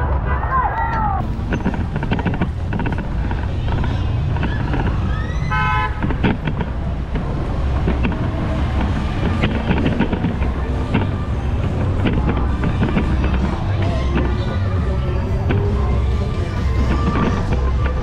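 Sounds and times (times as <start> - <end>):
traffic engine rumble: 0.0 - 18.0
vehicle horn toot: 5.3 - 6.2.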